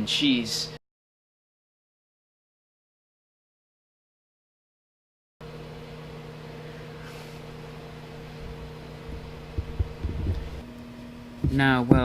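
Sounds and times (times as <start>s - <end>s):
microwave oven humming: 5.4s - 12.0s
low thumps: 8.5s - 10.6s.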